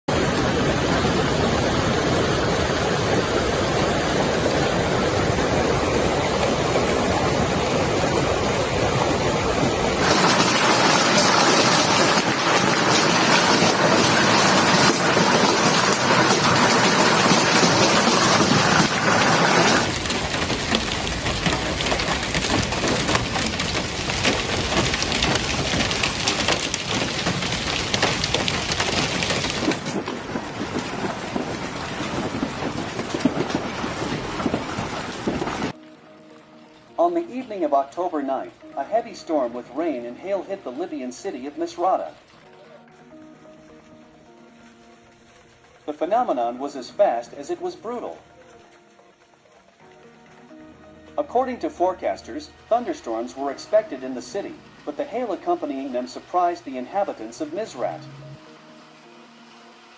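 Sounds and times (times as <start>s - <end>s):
heavy rain and hail: 0.1s - 35.8s.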